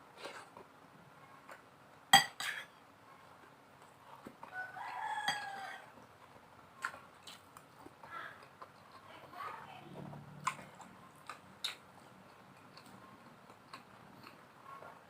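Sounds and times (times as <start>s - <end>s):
rooster crowing: 4.5s - 5.9s.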